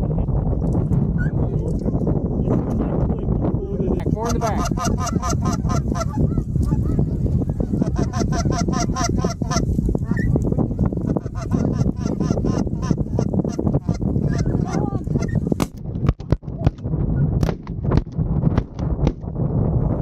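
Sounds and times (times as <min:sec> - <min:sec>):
steady low rumble: 0:00.0 - 0:20.0
geese honking: 0:04.0 - 0:10.3, 0:11.0 - 0:15.4.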